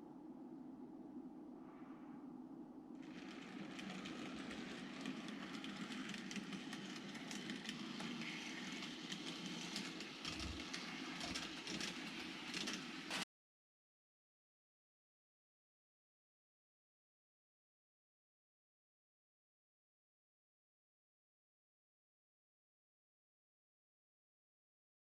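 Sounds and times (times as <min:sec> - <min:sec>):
model train motor hum: 0:03.0 - 0:13.2
wheel clicks over rail joints: 0:03.0 - 0:13.2.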